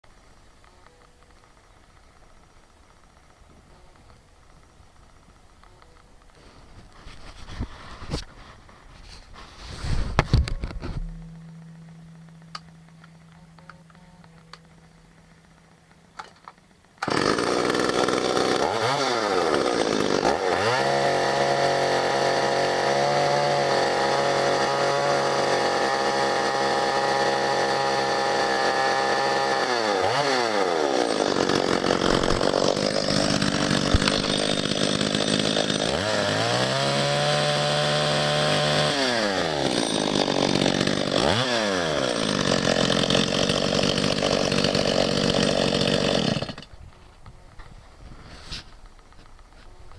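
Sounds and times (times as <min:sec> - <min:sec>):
chainsaw engine revving: 0:17.0 - 0:46.7.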